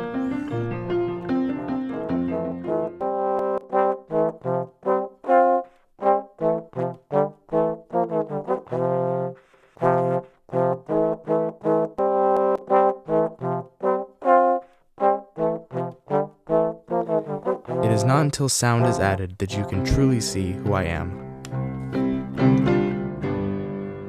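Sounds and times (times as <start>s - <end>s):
brass chords in bouncy rhythm: 0.0s - 24.0s.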